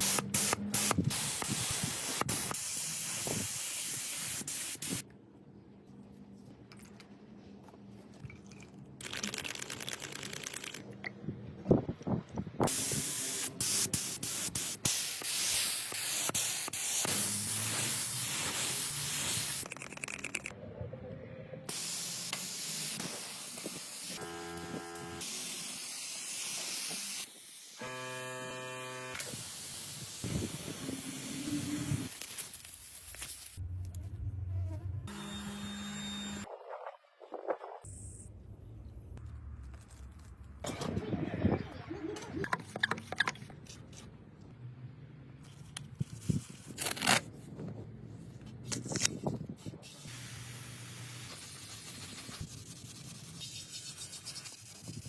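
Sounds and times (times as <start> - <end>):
compressed air hissing: 0.0 - 5.0, 12.7 - 19.6.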